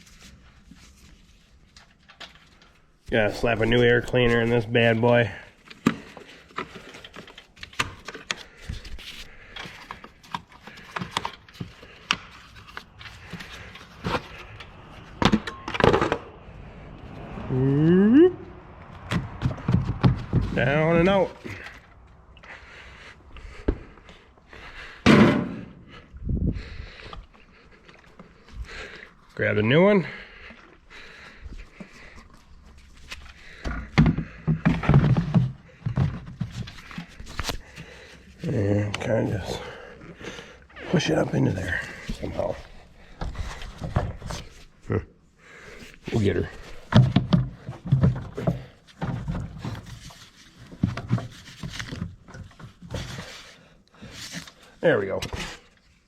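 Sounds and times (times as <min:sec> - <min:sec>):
man grunting with effort: 0:17.4 - 0:18.6
air filter knocks and thuds: 0:19.0 - 0:21.2, 0:25.0 - 0:25.8, 0:33.6 - 0:37.2.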